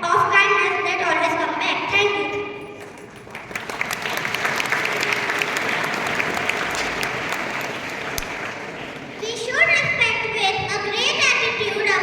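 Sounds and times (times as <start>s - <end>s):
audience applauding: 2.8s - 9.3s.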